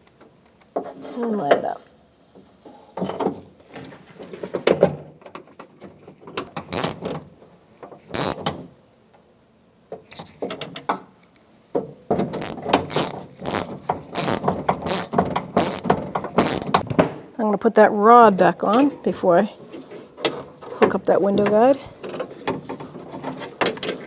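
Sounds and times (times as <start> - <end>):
socket ratchet clicking rapidly: 6.7 - 7.0, 8.2 - 8.4, 12.4 - 16.8
tools clicking and knocking on metal: 6.7 - 7.0, 12.1 - 16.8.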